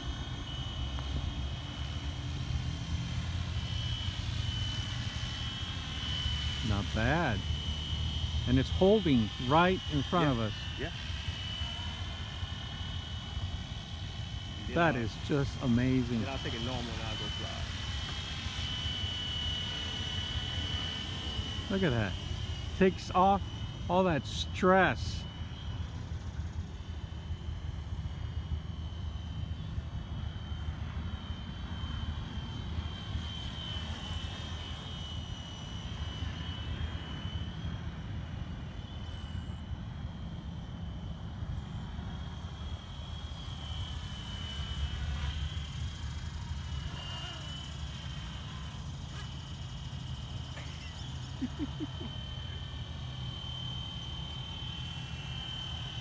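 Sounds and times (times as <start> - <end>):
rc helicopter rotor whine: 0.0 - 56.0.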